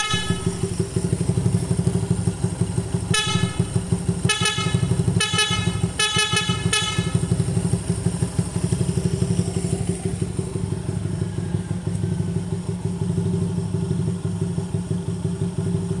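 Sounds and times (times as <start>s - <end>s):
motorcycle horn beeping: 0.0s - 2.0s, 3.1s - 7.7s
motorcycle engine idling: 0.0s - 16.0s.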